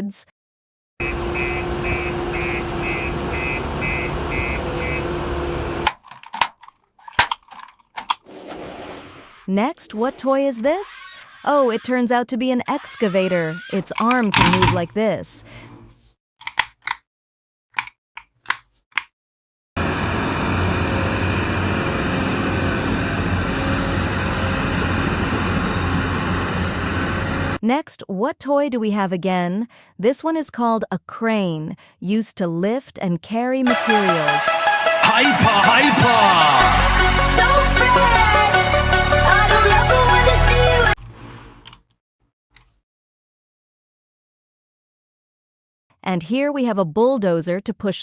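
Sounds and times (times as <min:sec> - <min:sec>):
machine rumble with low hum: 0:01.0 - 0:05.9
toy engine rumble effect: 0:10.1 - 0:14.9
sharp clicks and knocks: 0:13.8 - 0:14.9.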